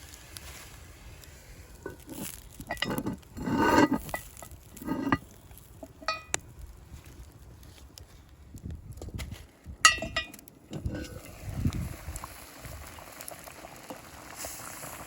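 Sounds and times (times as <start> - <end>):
metal utensils clinking on cookware: 9.9 - 11.1.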